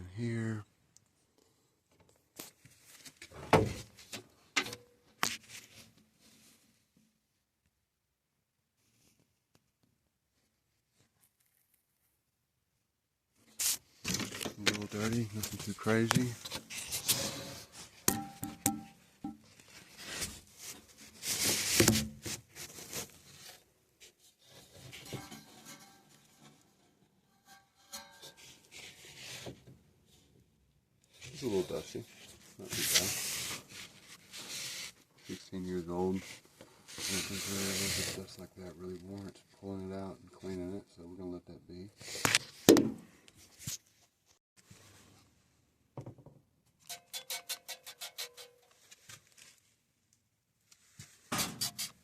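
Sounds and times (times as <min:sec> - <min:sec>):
equipment rustling and scraping: 0:14.1 - 0:23.6.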